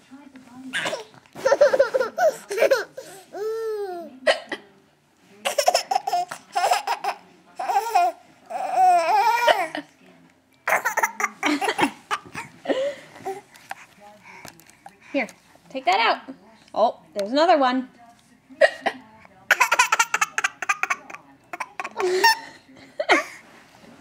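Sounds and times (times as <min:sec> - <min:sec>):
baby laughing: 0:00.8 - 0:04.1, 0:05.4 - 0:09.7, 0:19.5 - 0:22.5.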